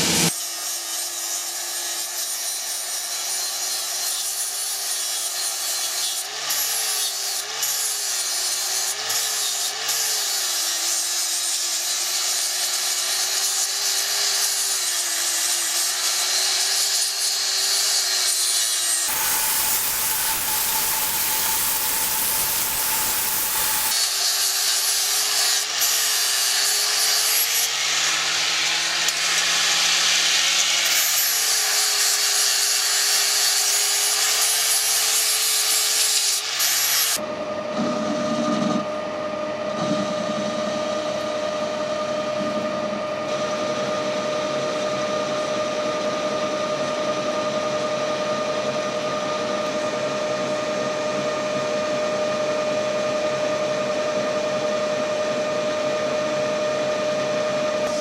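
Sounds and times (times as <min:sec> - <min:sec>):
power tool cutting metal: 0:00.0 - 0:39.0, 0:39.7 - 0:58.0
machine motor whining: 0:19.1 - 0:24.0.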